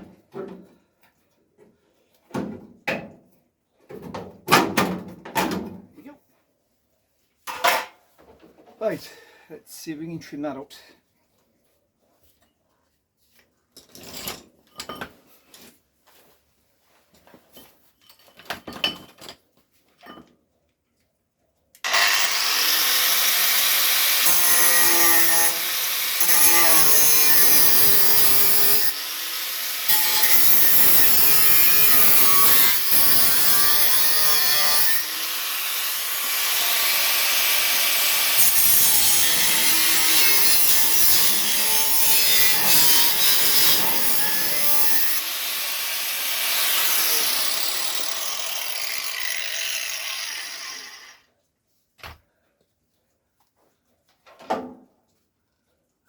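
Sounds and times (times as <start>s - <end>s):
power tool cutting sheet steel: 21.8s - 51.2s.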